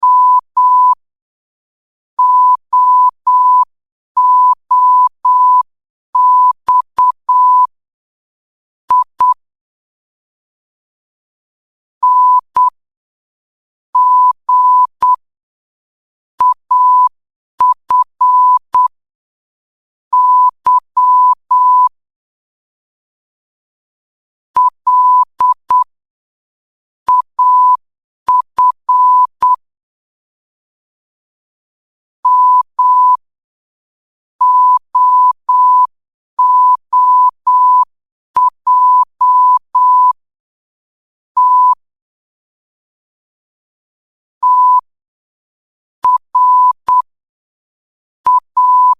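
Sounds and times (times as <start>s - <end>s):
morse code beeps: 0.0s - 1.0s, 2.2s - 5.6s, 6.2s - 7.7s, 16.4s - 18.9s, 20.2s - 21.9s, 24.6s - 25.9s, 27.1s - 29.6s, 32.3s - 33.2s, 34.4s - 40.2s, 41.4s - 41.8s, 44.4s - 44.8s, 46.1s - 47.1s, 48.3s - 48.9s.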